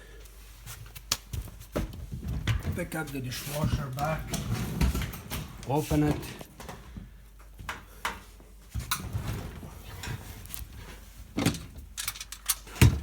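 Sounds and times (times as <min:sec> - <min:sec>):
dishwasher knocks and clunks: 0:12.8 - 0:13.0.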